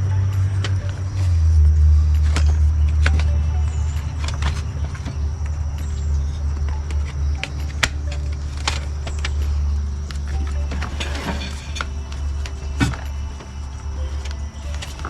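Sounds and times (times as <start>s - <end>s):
plastic parts and tools clicking: 0.0s - 15.0s
steady low hum: 0.0s - 15.0s.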